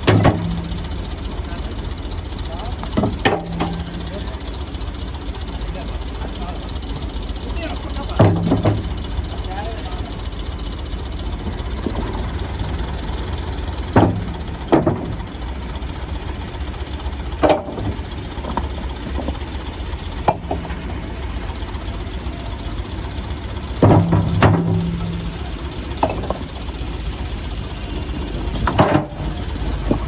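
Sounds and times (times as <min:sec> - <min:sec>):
metallic clanks and knocks: 0:00.0 - 0:01.6, 0:02.6 - 0:04.8, 0:08.0 - 0:10.2, 0:11.7 - 0:21.7, 0:23.6 - 0:27.2, 0:28.0 - 0:30.0
diesel engine running: 0:00.0 - 0:30.0.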